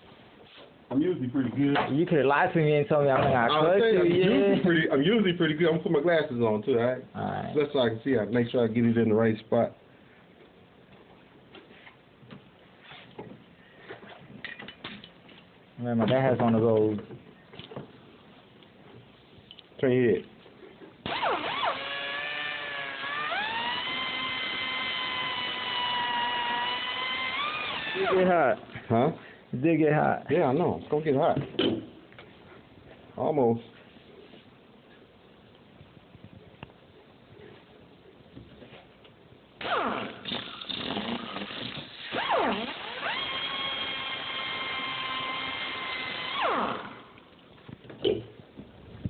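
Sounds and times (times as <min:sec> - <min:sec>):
rotary tool grinding steel: 0:21.1 - 0:28.2
power cutting tool whining: 0:21.1 - 0:28.3, 0:39.6 - 0:47.2.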